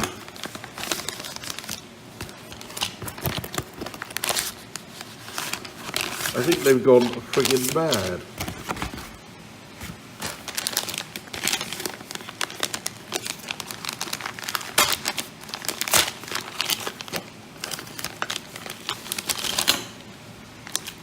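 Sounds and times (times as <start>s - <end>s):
packaging crinkling and rustling: 0.0s - 21.0s.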